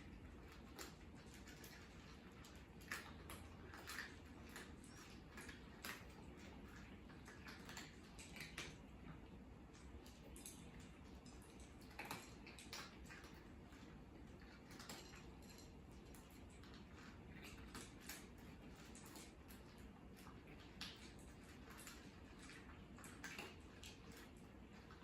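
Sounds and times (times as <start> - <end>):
cats eating crunches: 0.0 - 25.0
low steady hum: 0.0 - 25.0.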